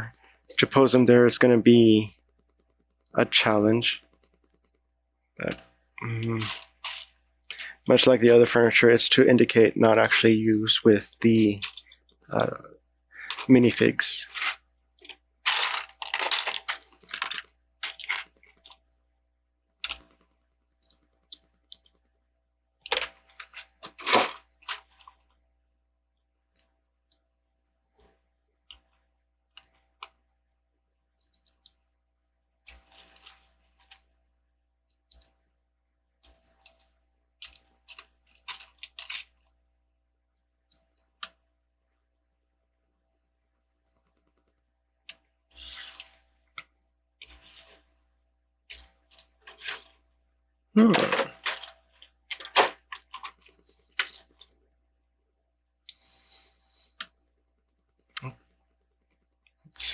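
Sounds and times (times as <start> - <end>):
plastic bricks clicking and clattering: 13.2 - 13.5, 50.8 - 54.6.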